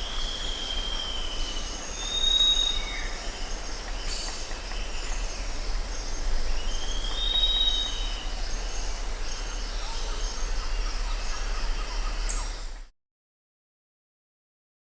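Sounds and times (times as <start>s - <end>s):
drawn-out whistled bird call: 0.0s - 5.3s
high-pitched insect chorus: 0.0s - 12.8s.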